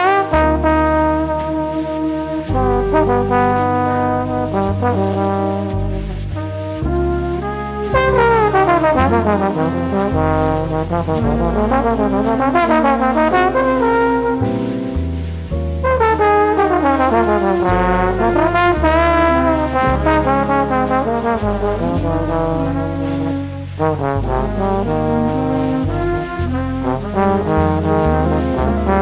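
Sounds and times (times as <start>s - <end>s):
bass line: 0.0s - 29.0s
brass horn solo: 0.0s - 29.0s
piano: 0.0s - 29.0s
drums: 8.1s - 18.6s.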